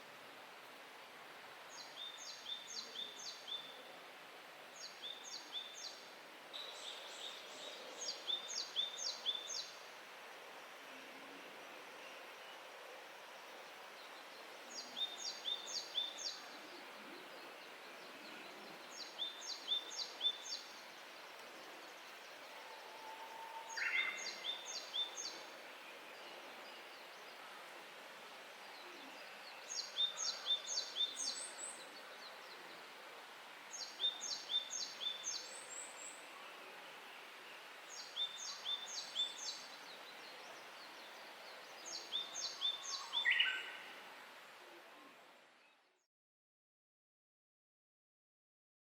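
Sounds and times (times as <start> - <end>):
steady background hiss: 0.0 - 46.0
bush warbler song: 1.7 - 3.8, 4.6 - 10.1, 12.0 - 22.9, 23.7 - 27.5, 28.4 - 44.0.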